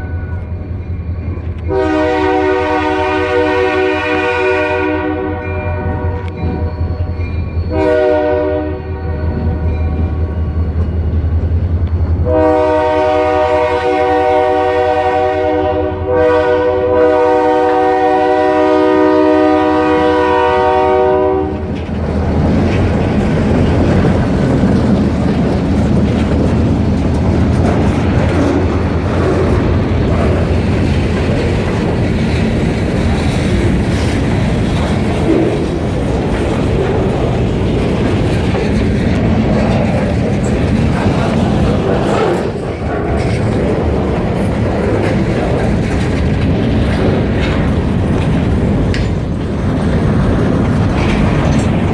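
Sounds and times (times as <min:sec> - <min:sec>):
train rolling past: 0:00.0 - 0:51.9
locomotive horn chord: 0:01.7 - 0:06.4, 0:07.7 - 0:09.0, 0:12.2 - 0:21.6
wheels clacking on rail joints: 0:21.5 - 0:51.9.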